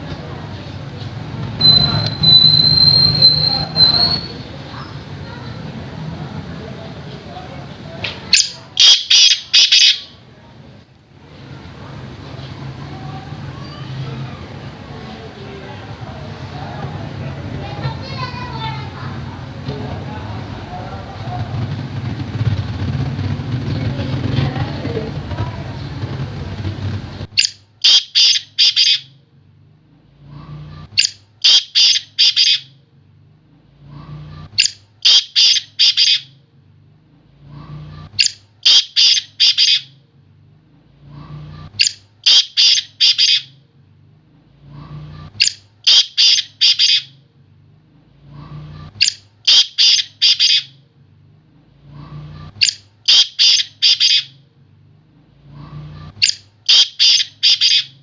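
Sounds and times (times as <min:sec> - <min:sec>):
francolin calling: 0:01.6 - 0:05.0, 0:08.3 - 0:10.2, 0:27.4 - 0:29.2, 0:30.5 - 0:32.8, 0:34.3 - 0:36.4, 0:37.9 - 0:40.0, 0:41.5 - 0:43.6, 0:45.2 - 0:47.2, 0:48.4 - 0:50.8, 0:52.0 - 0:54.4, 0:55.6 - 0:58.0.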